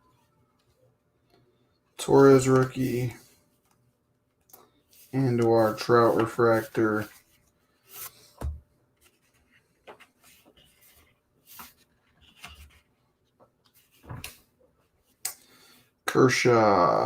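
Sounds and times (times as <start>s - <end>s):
trading cards scraping and clicking: 5.0s - 7.2s.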